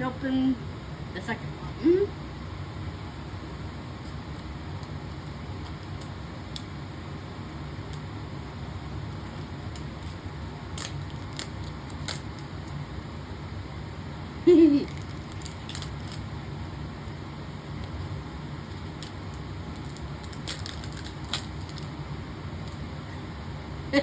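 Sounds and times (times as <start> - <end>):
plastic packaging crinkling: 9.1 - 12.8, 14.6 - 16.3, 17.1 - 22.0.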